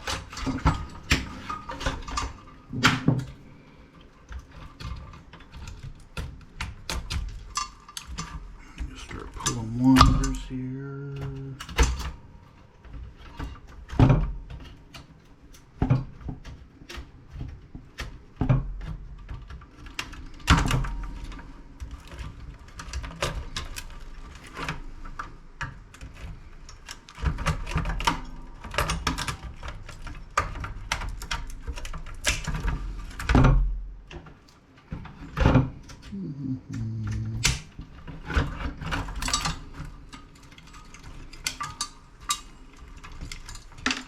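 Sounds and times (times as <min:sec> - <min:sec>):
tools clicking and rattling: 0:00.0 - 0:17.2, 0:36.9 - 0:44.0.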